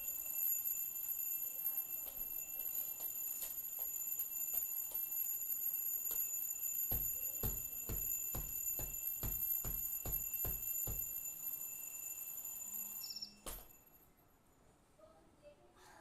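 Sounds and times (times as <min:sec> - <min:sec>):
alarm clock bell ringing: 0:00.0 - 0:14.2.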